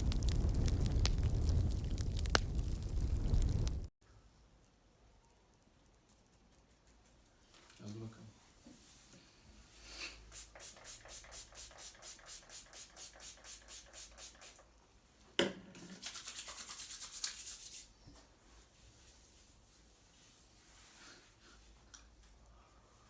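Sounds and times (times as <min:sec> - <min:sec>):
hands rubbing during massage: 0:10.3 - 0:14.6, 0:15.9 - 0:21.8.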